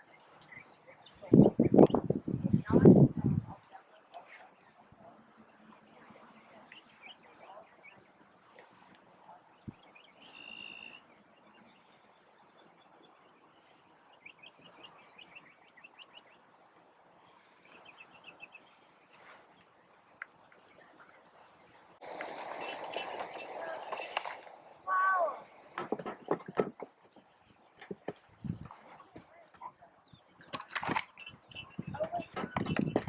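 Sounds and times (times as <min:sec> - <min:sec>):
birds chirping: 0:00.0 - 0:33.0
bird trilled phrases: 0:22.6 - 0:26.2, 0:28.7 - 0:33.0.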